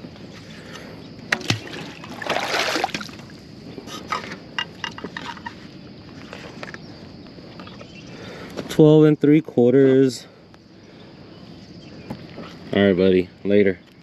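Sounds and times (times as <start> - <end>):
water splashing: 1.3 - 3.4.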